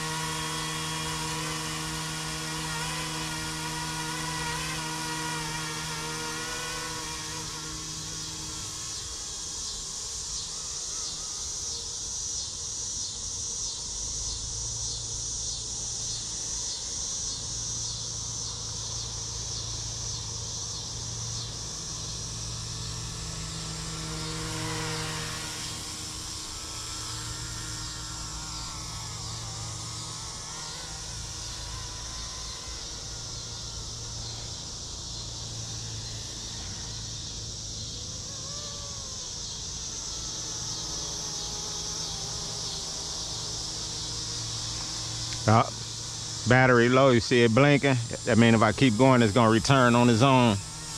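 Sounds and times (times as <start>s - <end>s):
low hum: 0.0s - 50.9s
rc helicopter motor whine: 0.0s - 50.9s.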